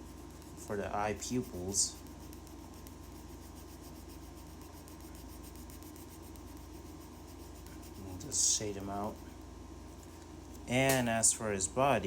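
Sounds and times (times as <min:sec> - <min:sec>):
drawing tool scratching paper: 0:00.0 - 0:09.2.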